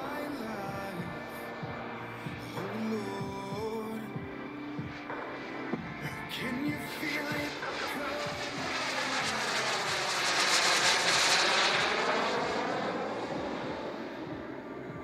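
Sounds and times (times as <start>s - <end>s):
model jet turbine flyby: 6.5s - 15.0s.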